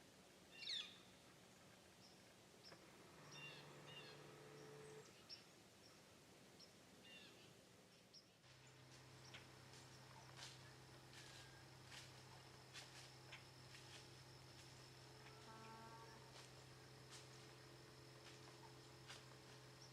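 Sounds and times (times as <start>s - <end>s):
faint bird chirps: 0.5s - 6.0s.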